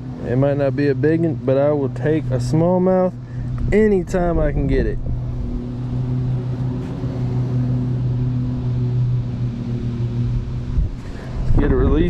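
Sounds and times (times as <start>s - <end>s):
low motor hum: 0.0s - 12.0s
wind on microphone: 3.4s - 12.0s.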